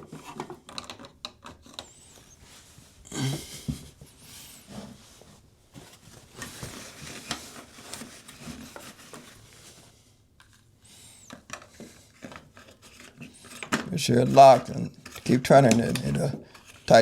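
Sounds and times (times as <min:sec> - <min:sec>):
plastic clicks and knocks: 0:00.2 - 0:01.9.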